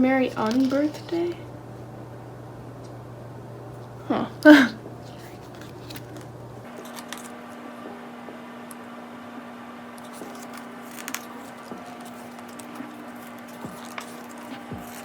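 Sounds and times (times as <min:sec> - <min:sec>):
faint steady hum: 0:00.0 - 0:15.0
paper pages rustling: 0:00.4 - 0:01.4, 0:05.0 - 0:07.6, 0:10.0 - 0:15.0.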